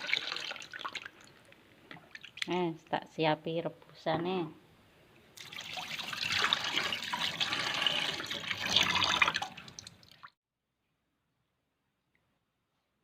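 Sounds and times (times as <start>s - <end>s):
water splashing into a pot: 0.0s - 2.6s, 5.4s - 10.4s.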